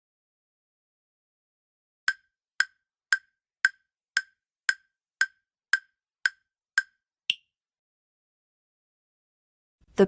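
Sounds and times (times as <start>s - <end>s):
sharp timer ticks: 2.1s - 7.4s.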